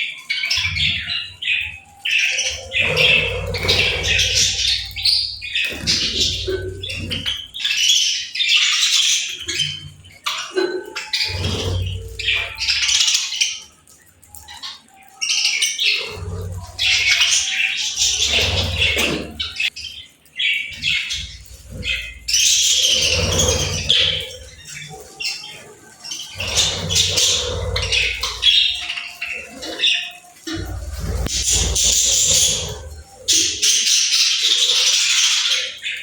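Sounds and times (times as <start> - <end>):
budgerigars chirping and chattering: 0.0 - 36.0.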